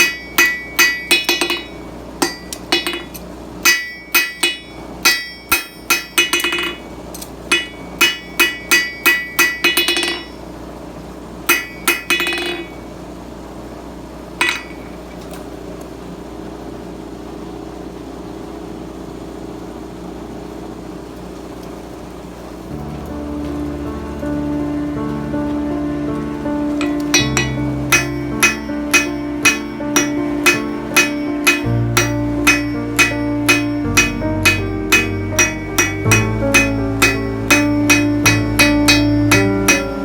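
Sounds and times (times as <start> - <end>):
hammer striking steel on anvil: 0.0 - 10.4, 11.5 - 12.8, 14.4 - 15.0, 26.7 - 40.0
background hiss: 22.6 - 40.0.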